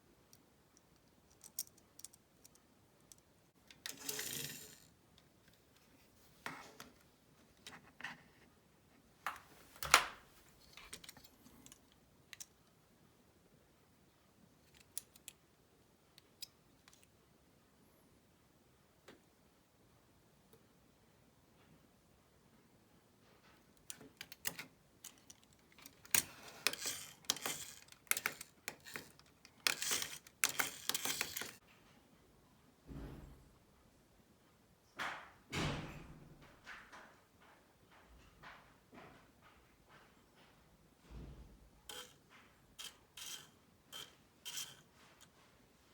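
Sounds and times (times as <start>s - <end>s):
plastic parts clicking and scraping: 0.3s - 8.5s, 9.3s - 12.7s, 14.6s - 15.4s, 16.2s - 17.1s, 23.6s - 31.6s, 41.9s - 45.5s.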